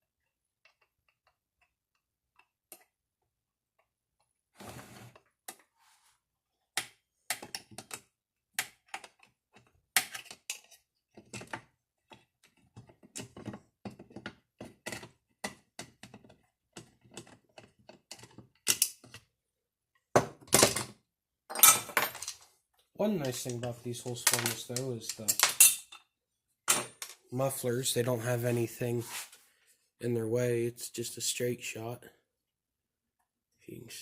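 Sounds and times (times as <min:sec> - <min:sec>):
tools and metal parts clattering: 0:20.5 - 0:22.5, 0:23.2 - 0:26.1, 0:26.7 - 0:27.3
metal scrape: 0:28.8 - 0:29.4.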